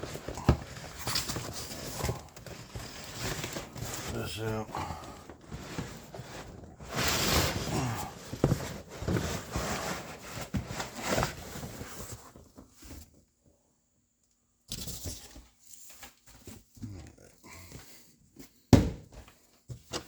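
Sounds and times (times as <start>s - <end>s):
plastic wrapping rustling and tearing: 0.0s - 12.8s.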